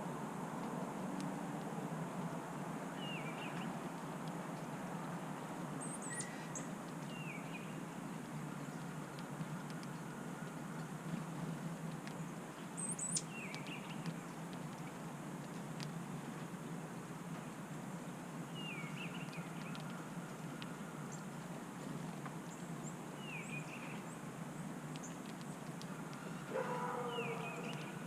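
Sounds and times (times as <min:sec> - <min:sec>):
small songbird chirping: 0:03.0 - 0:03.8, 0:05.8 - 0:11.0, 0:12.1 - 0:15.0, 0:18.4 - 0:21.4, 0:22.4 - 0:28.0.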